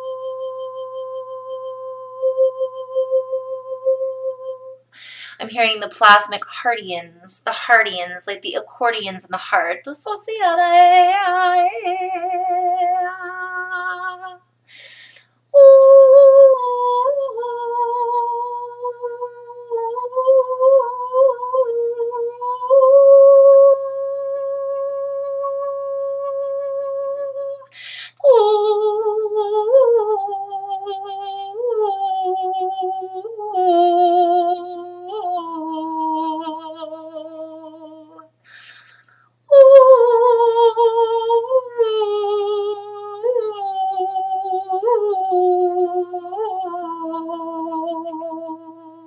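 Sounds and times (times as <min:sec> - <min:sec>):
woman singing long wordless notes: 0:00.0 - 0:49.0
woman breathing in: 0:04.9 - 0:05.4, 0:14.7 - 0:15.4, 0:27.7 - 0:28.2, 0:38.4 - 0:39.4.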